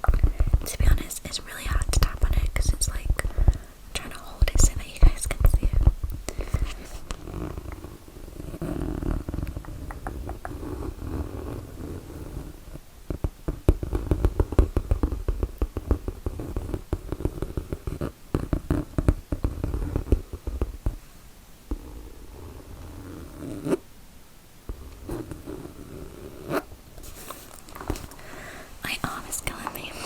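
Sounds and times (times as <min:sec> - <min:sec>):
scratching on a bag: 0:05.4 - 0:12.8
fingernails tapping on a bag: 0:09.3 - 0:10.9, 0:13.1 - 0:21.0.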